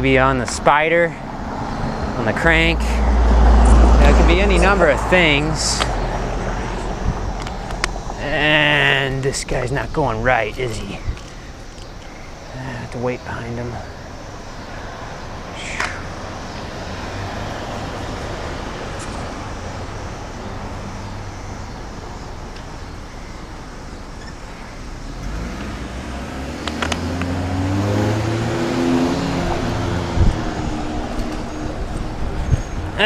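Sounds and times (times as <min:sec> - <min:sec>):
road traffic: 0:00.0 - 0:33.0
car engine accelerating: 0:01.3 - 0:09.3, 0:14.3 - 0:33.0
sharp clicks: 0:07.4 - 0:08.2, 0:26.6 - 0:27.4.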